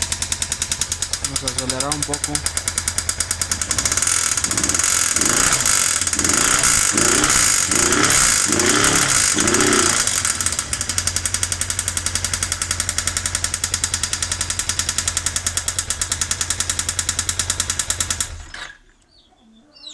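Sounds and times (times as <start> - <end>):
engine knocking: 0.0 - 18.9
motorcycle engine revving: 0.0 - 19.0.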